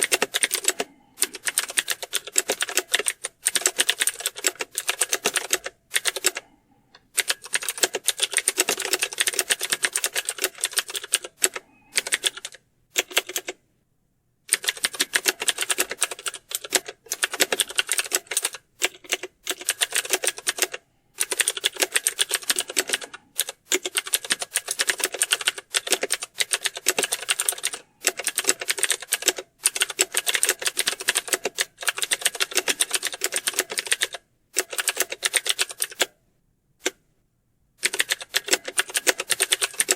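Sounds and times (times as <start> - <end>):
fast typing on keyboards: 0.0 - 6.5, 7.2 - 13.6, 14.5 - 36.1, 37.8 - 39.9.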